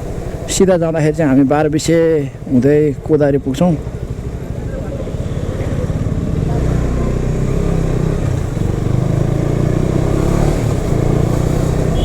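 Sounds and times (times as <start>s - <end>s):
motorcycle engine running: 0.0s - 12.0s.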